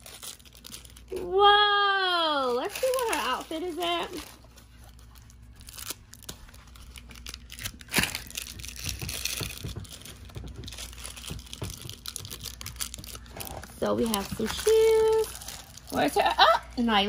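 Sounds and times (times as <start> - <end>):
plastic packaging crinkling and tearing: 0.0 - 17.0.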